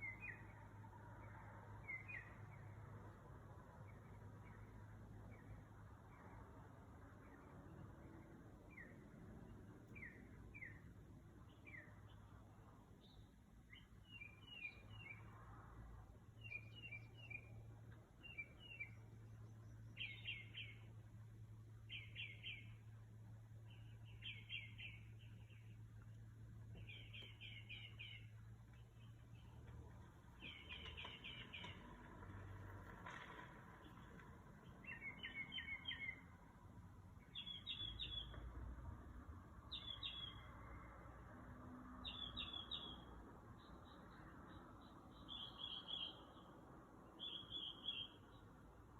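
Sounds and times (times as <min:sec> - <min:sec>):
bird singing faintly: 0:00.0 - 0:02.8, 0:13.0 - 0:15.4, 0:16.3 - 0:21.0, 0:21.8 - 0:32.0, 0:33.8 - 0:36.4, 0:37.2 - 0:38.5, 0:39.7 - 0:41.0, 0:42.0 - 0:48.6.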